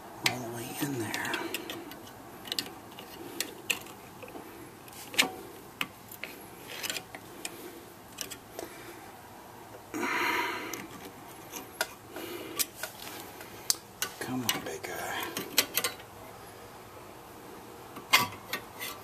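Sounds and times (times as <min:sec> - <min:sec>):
light clicks and taps of metal: 0:00.2 - 0:08.7, 0:10.7 - 0:16.1.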